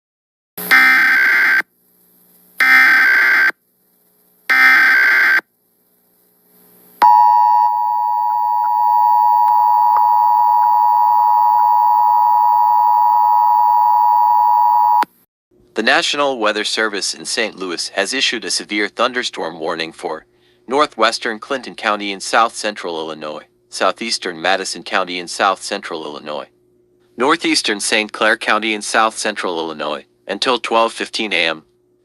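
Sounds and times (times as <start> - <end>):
two-tone attention signal: 7.0 - 15.0.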